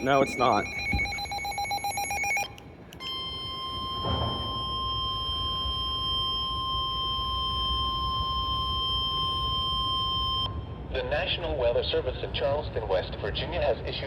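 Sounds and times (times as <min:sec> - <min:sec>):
steady high alarm tone: 0:00.0 - 0:10.8.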